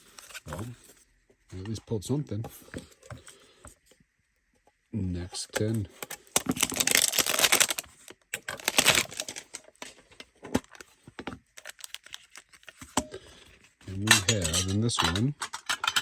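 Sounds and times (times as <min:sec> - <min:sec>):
plastic wrap crinkling: 0:06.4 - 0:09.8, 0:11.6 - 0:12.8.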